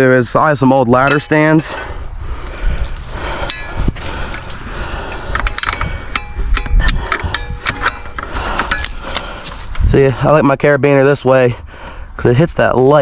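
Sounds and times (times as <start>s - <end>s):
metal hitch hardware clinking: 1.0s - 1.8s, 2.8s - 9.9s.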